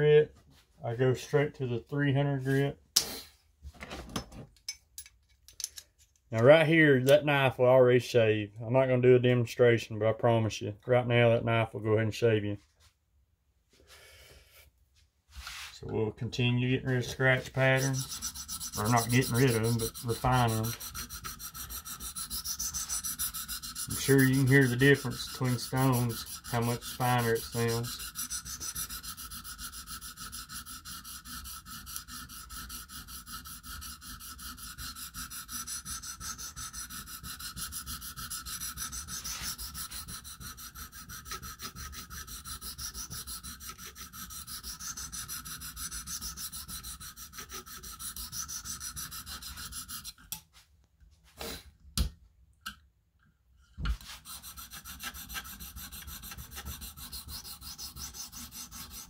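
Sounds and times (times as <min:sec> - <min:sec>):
sharpening stone scraping knife edge: 0:17.8 - 0:50.3, 0:54.2 - 0:59.0.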